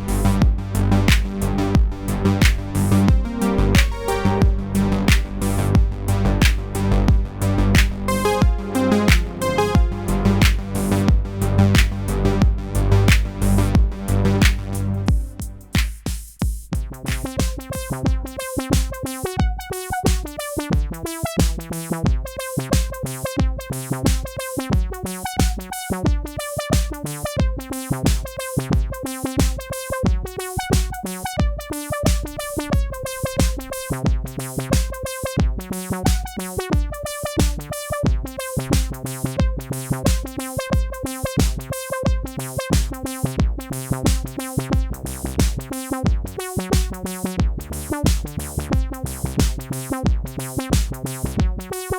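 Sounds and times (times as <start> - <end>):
synthesizer melody: 0.0 - 15.8, 16.9 - 21.3, 27.6 - 38.7
drum machine kick beat: 0.0 - 51.9.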